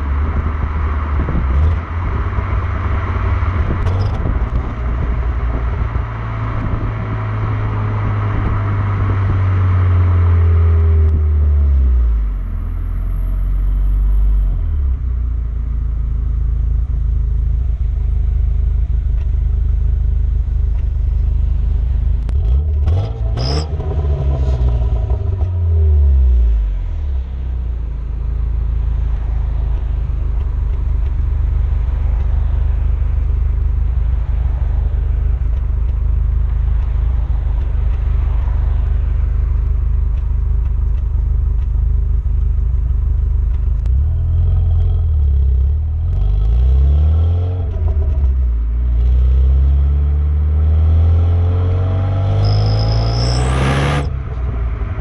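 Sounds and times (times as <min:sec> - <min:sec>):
car engine running: 0:00.0 - 0:46.8, 0:51.8 - 0:55.0.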